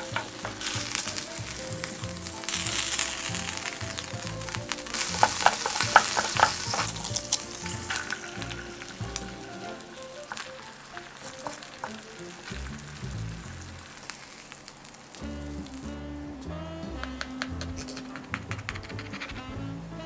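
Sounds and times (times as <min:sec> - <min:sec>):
food sizzling in frying pan: 0:00.0 - 0:16.0.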